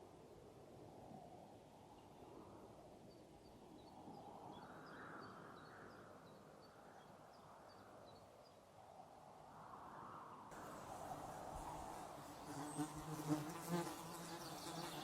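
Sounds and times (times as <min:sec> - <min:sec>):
soft rushing hiss: 0:10.5 - 0:15.0.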